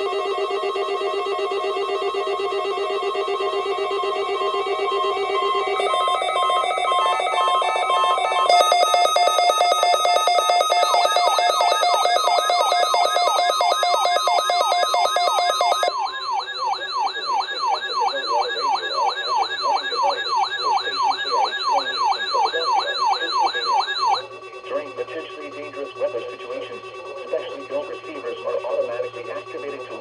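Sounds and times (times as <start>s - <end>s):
falling siren-like sweep: 0.0s - 24.2s
steady electronic alert tones: 5.7s - 24.2s.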